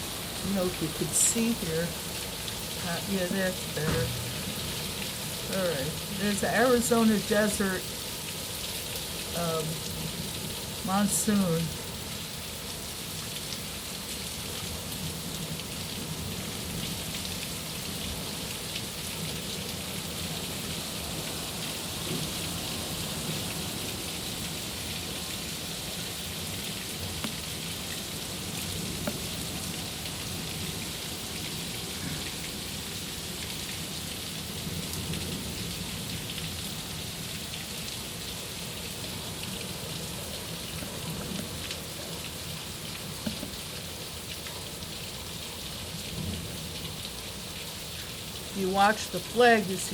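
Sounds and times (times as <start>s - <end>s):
heavy rain hissing: 0.0s - 49.9s
rain drop ticks: 0.4s - 14.3s, 24.4s - 45.1s.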